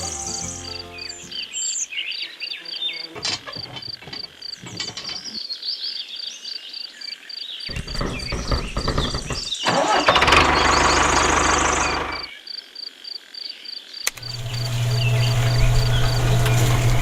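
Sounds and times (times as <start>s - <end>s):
short chirping calls: 0.0s - 2.2s
crickets chirping: 10.7s - 16.6s.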